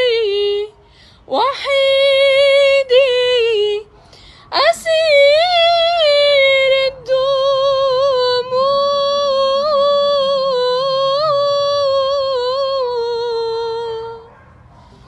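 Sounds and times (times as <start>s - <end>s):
woman singing a lament: 0.0s - 3.9s, 4.5s - 14.3s.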